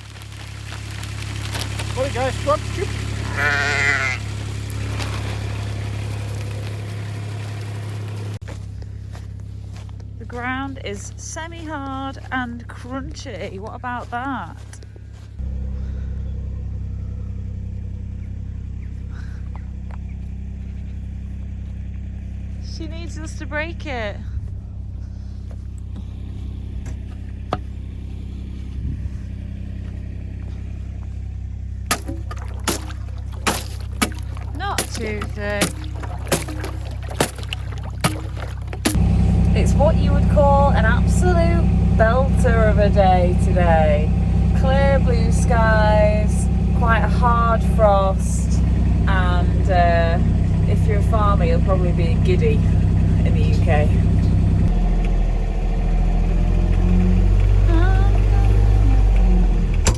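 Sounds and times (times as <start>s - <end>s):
idling engine hum: 0.0s - 59.9s
sheep bleating: 2.2s - 5.4s.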